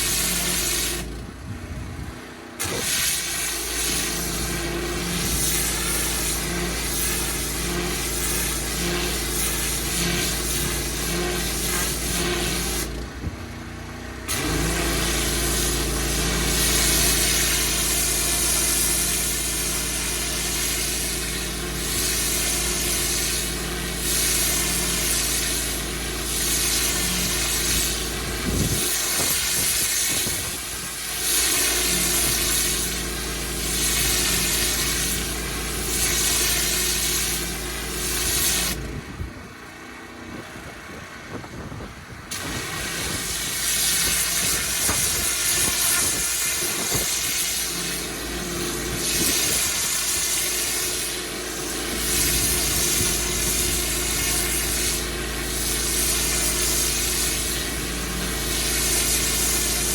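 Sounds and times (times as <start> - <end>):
water spraying hiss: 0.0 - 1.1, 2.6 - 12.9, 14.3 - 38.9, 42.3 - 59.9
pressure washer hum: 0.0 - 59.9.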